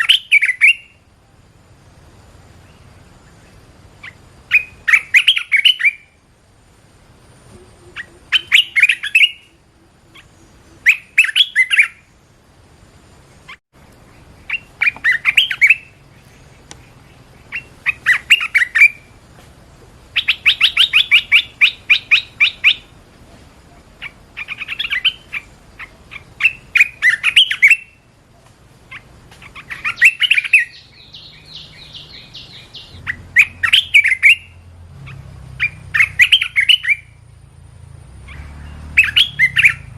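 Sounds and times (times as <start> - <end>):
bulbul singing chirpy phrases: 7.5 - 12.7, 28.8 - 37.2.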